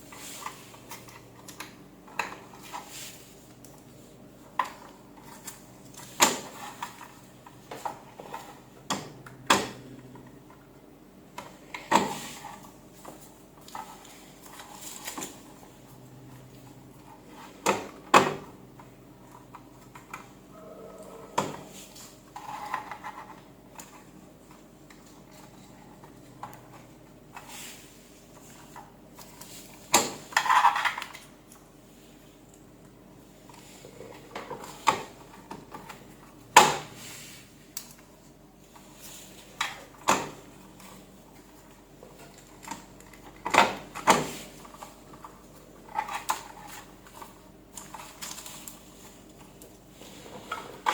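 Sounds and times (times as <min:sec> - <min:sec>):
faint steady hum: 0:18.7 - 0:29.5.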